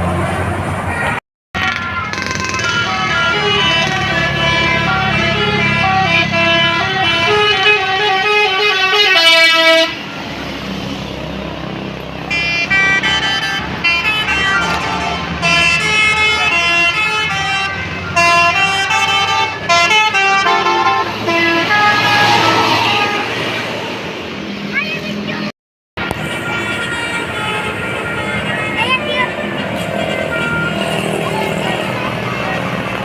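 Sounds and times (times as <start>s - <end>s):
bus engine: 0.0s - 33.0s
bus musical horn tunes: 1.6s - 10.0s, 12.3s - 23.8s, 26.1s - 33.0s
rush of noise: 26.0s - 33.0s.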